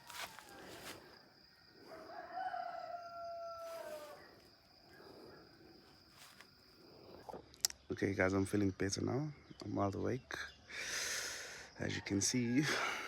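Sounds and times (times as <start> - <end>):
distant rooster crowing: 0.0 - 4.5, 12.0 - 13.0.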